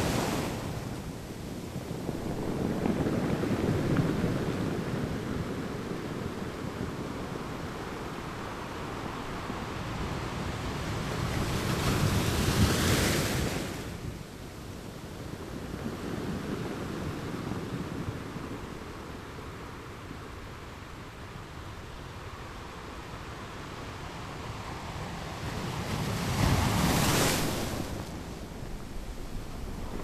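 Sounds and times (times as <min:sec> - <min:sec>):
ocean waves breaking: 0:24.5 - 0:30.0.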